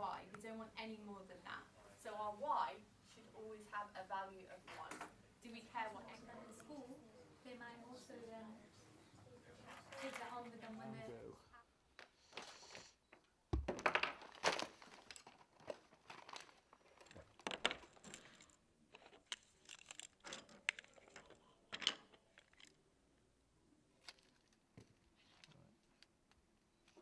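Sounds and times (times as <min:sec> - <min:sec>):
rustling and scraping of handling: 0:09.5 - 0:10.8, 0:14.2 - 0:22.8, 0:24.0 - 0:27.0.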